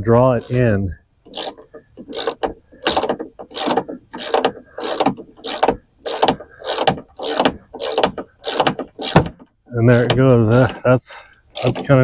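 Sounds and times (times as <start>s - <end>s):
ratchet wrench clicking: 1.3s - 9.2s, 11.5s - 11.9s.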